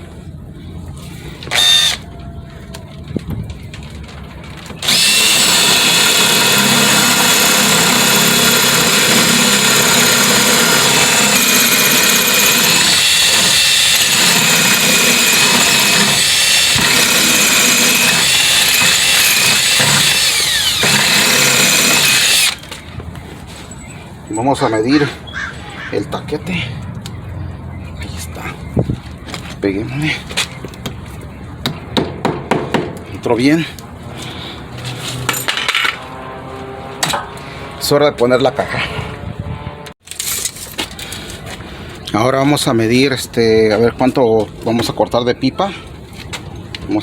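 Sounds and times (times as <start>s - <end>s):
electric drill whining: 1.5s - 2.0s, 4.8s - 22.6s.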